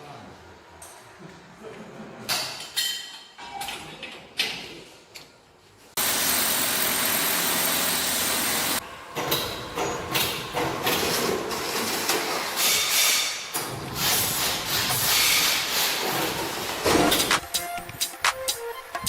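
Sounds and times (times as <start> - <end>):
loud steady hiss: 6.0 - 8.8.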